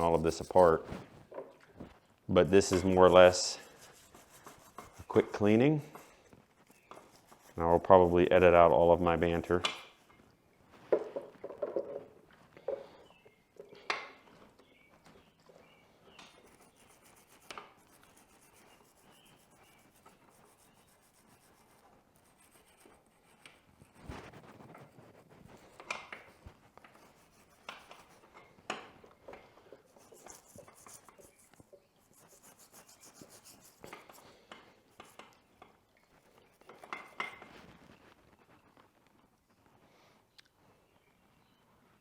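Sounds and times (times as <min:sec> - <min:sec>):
brush scrubbing brake caliper: 0:00.0 - 0:00.9, 0:02.6 - 0:05.5, 0:16.2 - 0:28.4, 0:29.8 - 0:34.2.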